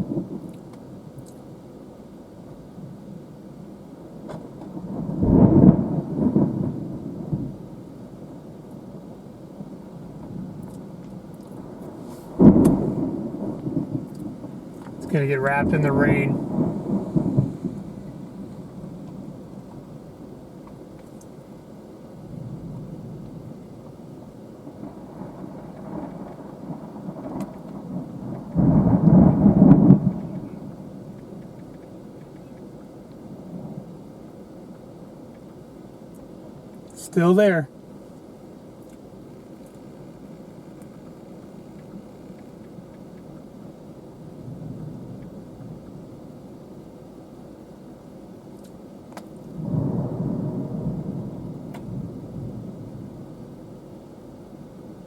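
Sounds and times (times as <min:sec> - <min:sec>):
thunder rumbling: 0:00.0 - 0:01.0, 0:04.4 - 0:09.0, 0:09.6 - 0:20.9, 0:22.1 - 0:35.6, 0:39.4 - 0:46.4, 0:49.3 - 0:55.0
wind and rain rushing: 0:00.0 - 0:55.0
loud thunder crack: 0:04.8 - 0:07.6, 0:11.7 - 0:19.7, 0:24.8 - 0:31.0, 0:49.6 - 0:53.5
faint ticks: 0:10.2 - 0:11.6, 0:12.6 - 0:12.8, 0:13.6 - 0:15.0, 0:20.6 - 0:21.4, 0:27.3 - 0:27.8, 0:31.1 - 0:33.2, 0:38.2 - 0:43.5.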